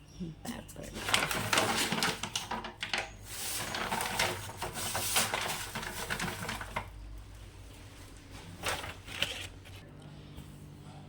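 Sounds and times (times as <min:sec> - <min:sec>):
kitchen containers clattering: 0:00.7 - 0:06.9
rustling: 0:00.9 - 0:09.8.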